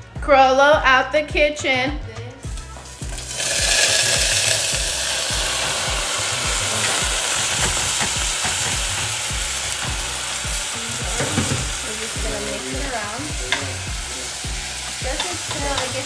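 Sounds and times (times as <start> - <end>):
rice sizzling in hot oil: 2.5 - 16.0.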